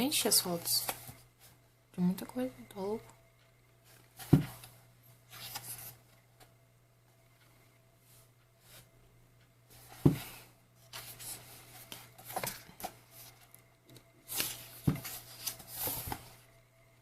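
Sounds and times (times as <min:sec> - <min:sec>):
soft knocks of book: 0:04.2 - 0:04.7, 0:10.0 - 0:10.3, 0:14.4 - 0:16.3
pages being turned: 0:05.3 - 0:06.0, 0:10.8 - 0:13.5, 0:14.3 - 0:16.4
paper rustling: 0:05.3 - 0:06.0, 0:14.3 - 0:16.4.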